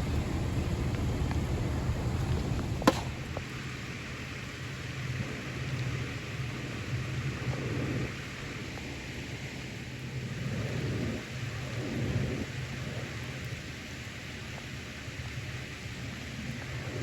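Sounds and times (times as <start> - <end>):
low rolling thunder: 0.0 - 3.4
steady rain: 0.0 - 17.0.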